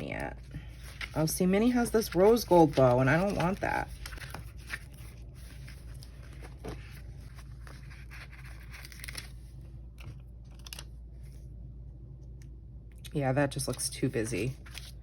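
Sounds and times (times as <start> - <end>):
paper sheets crinkling: 0.0 - 10.9, 14.4 - 15.0.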